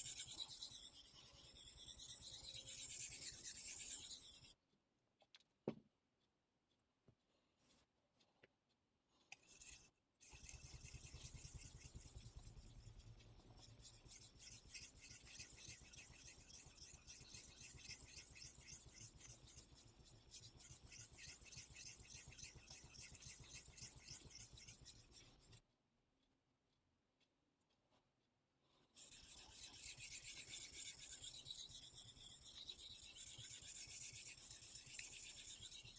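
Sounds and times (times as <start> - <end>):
knife scraping on whetstone: 29.0 - 35.9.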